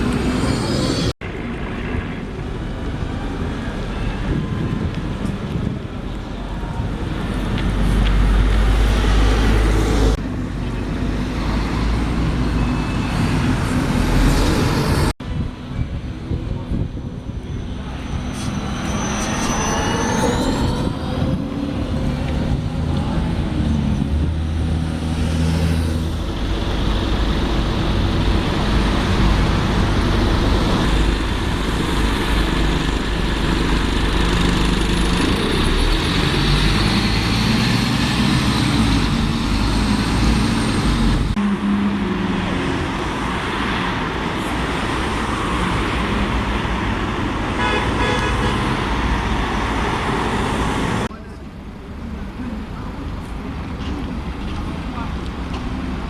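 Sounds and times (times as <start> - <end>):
heavy vehicles passing: 0.0 - 56.0
short rising whine: 17.8 - 22.0.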